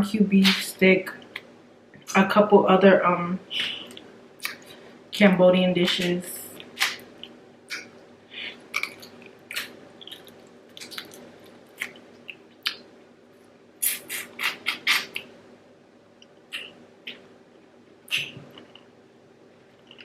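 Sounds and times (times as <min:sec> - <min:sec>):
food being chewed: 0:06.6 - 0:12.9, 0:18.1 - 0:18.9, 0:19.6 - 0:20.0
wet squishes of food: 0:06.6 - 0:13.0.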